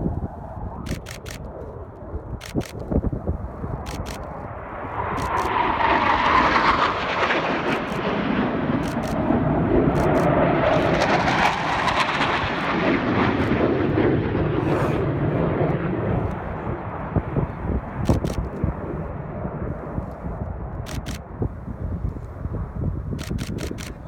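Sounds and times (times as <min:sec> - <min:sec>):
jet flying past: 0:00.0 - 0:24.0
faint sharp clicks: 0:05.2 - 0:05.6, 0:10.0 - 0:10.9.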